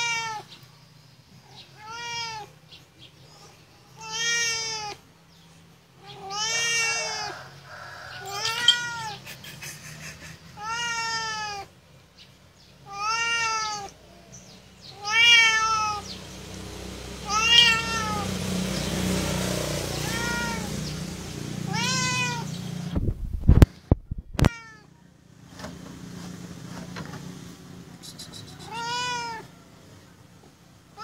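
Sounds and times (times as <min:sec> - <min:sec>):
cat meowing: 0:00.0 - 0:00.5, 0:01.8 - 0:02.6, 0:04.0 - 0:05.0, 0:06.0 - 0:07.4, 0:08.2 - 0:09.2, 0:10.6 - 0:11.7, 0:12.8 - 0:14.0, 0:14.9 - 0:16.1, 0:17.2 - 0:18.4, 0:19.8 - 0:20.8, 0:21.7 - 0:22.6, 0:24.3 - 0:24.9, 0:28.6 - 0:29.5.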